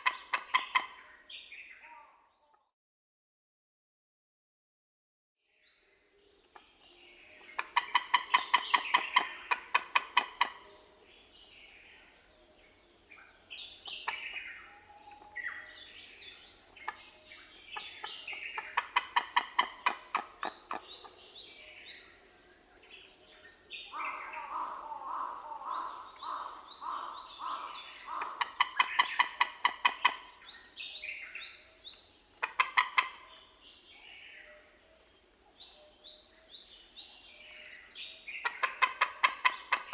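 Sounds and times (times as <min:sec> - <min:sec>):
eagles calling: 0:23.9 - 0:30.5.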